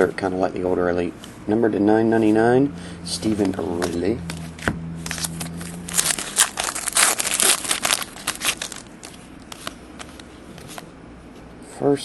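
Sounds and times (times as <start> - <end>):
foil wrapper crinkling and tearing: 4.3 - 10.2.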